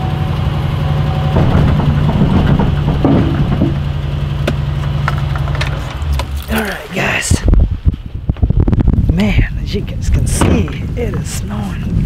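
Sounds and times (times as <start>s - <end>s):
vehicle engine idling: 0.0s - 12.0s
knocking and rattling: 1.0s - 6.6s, 10.2s - 11.4s.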